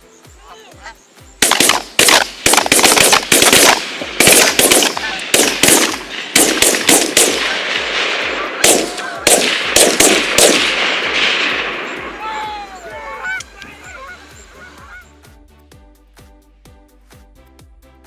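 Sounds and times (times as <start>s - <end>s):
shotgun shots volley: 1.4s - 12.0s.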